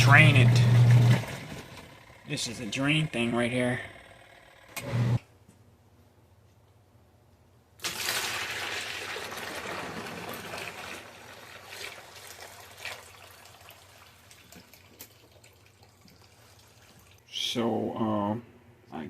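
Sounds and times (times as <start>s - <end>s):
water rushing out of drain: 7.8s - 17.2s.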